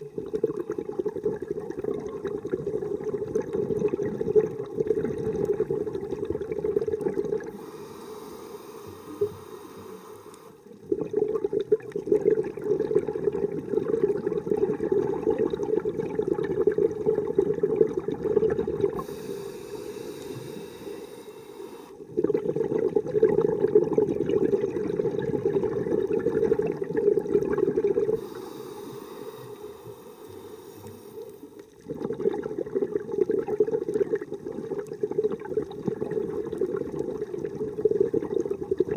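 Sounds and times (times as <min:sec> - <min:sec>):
diver breathing through regulator: 0:07.5 - 0:10.7, 0:18.9 - 0:22.1, 0:28.1 - 0:31.7.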